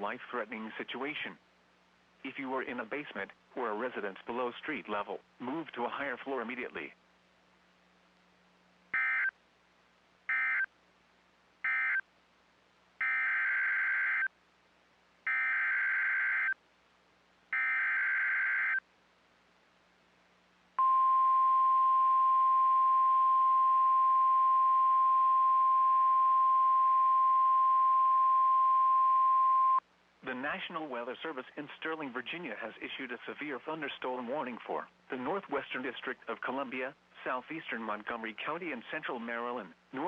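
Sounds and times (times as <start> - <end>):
loud steady warning alarm tone: 13.0 - 14.3.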